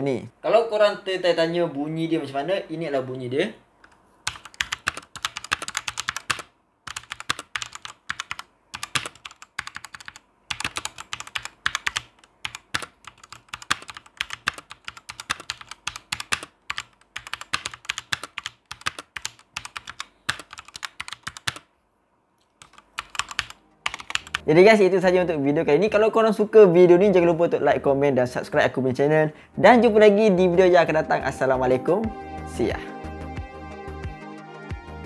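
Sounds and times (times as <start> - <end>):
fast mechanical keyboard typing: 4.2 - 21.7, 22.6 - 24.4.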